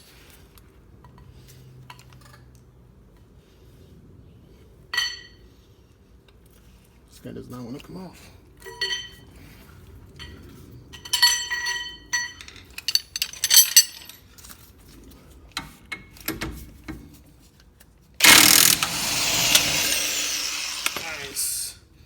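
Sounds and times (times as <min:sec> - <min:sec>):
metal tools clinking: 0:11.2 - 0:14.4
impact wrench hammering: 0:18.2 - 0:21.6.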